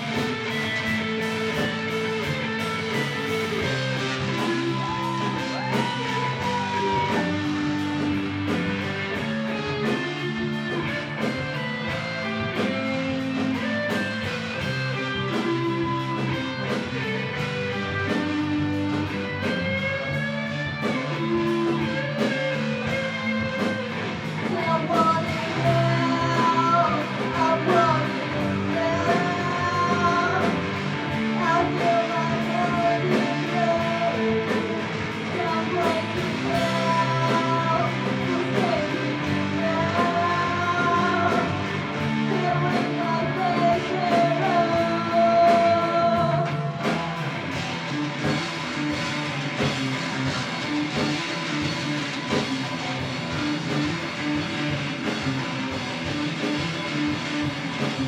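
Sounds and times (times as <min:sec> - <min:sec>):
rock band playing: 0:00.0 - 0:58.0.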